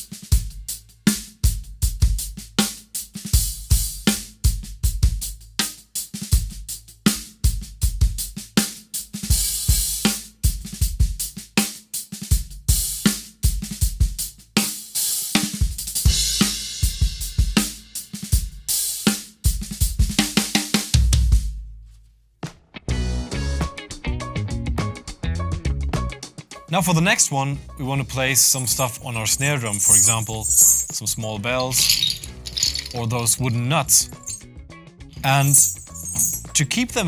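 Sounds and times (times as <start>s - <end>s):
drum kit groove: 0.0s - 11.5s, 12.4s - 21.6s.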